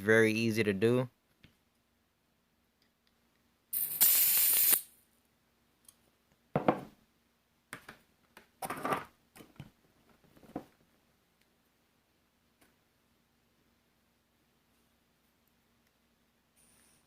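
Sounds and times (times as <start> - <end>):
gas hissing into valve: 3.7 - 4.9.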